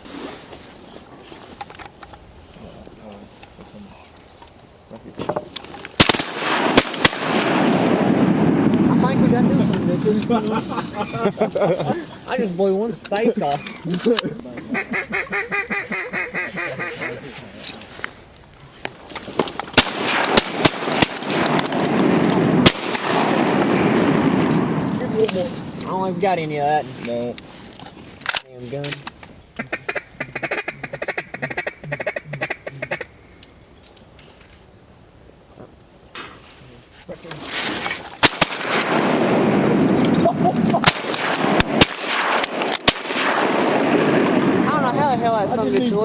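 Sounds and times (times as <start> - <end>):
shotgun blasts: 6.0 - 10.4, 19.7 - 25.8, 38.2 - 45.0
steady rushing noise: 6.3 - 12.6.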